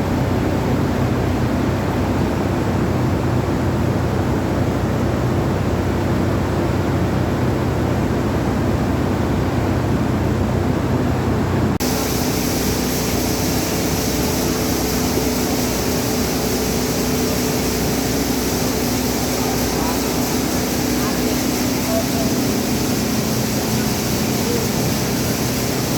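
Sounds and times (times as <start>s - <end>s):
grain dryer machinery droning: 11.8s - 25.9s.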